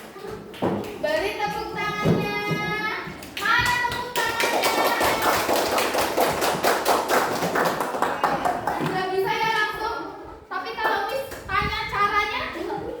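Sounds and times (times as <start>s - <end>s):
children's voices: 0.0s - 5.5s, 8.0s - 13.0s
children clapping hands: 3.3s - 9.0s.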